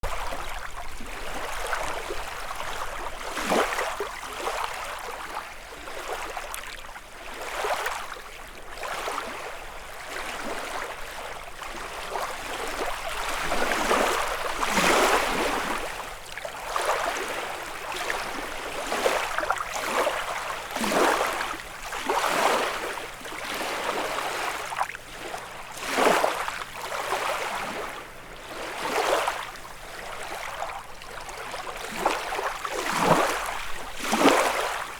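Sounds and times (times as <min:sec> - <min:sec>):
waves lapping on shore: 0:00.0 - 0:34.9.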